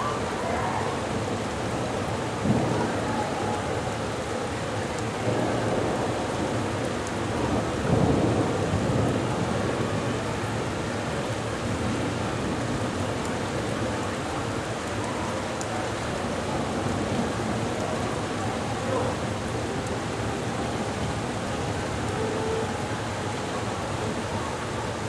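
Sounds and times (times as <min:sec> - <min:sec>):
thunder rumbling: 0:00.0 - 0:04.1, 0:05.1 - 0:13.8
heavy rain pouring: 0:00.0 - 0:25.0.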